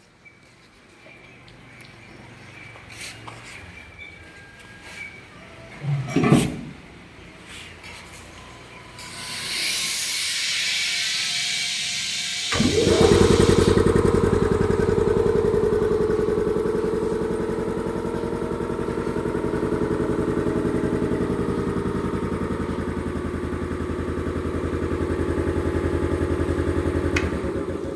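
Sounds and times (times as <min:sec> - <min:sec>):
air hissing: 0:09.0 - 0:17.9
compressor motor pulsing: 0:09.0 - 0:27.9.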